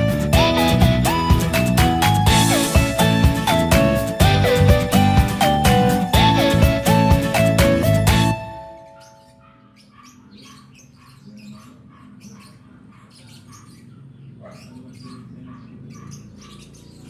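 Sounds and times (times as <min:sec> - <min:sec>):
background music: 0:00.0 - 0:09.5
small animal chirping: 0:08.9 - 0:17.0.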